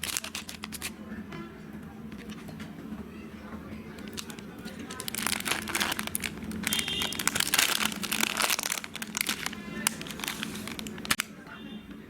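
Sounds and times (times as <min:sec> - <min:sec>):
crinkling and crackling: 0:00.0 - 0:00.9, 0:03.9 - 0:11.3.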